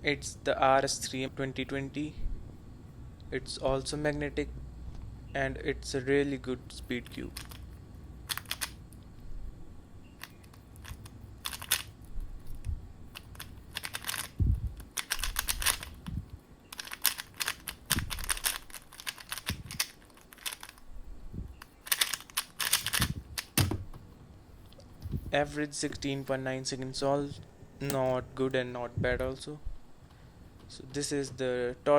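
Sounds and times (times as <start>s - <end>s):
puzzle cube plastic clicking: 7.0s - 7.7s, 8.3s - 9.1s, 10.2s - 20.9s, 21.5s - 23.8s.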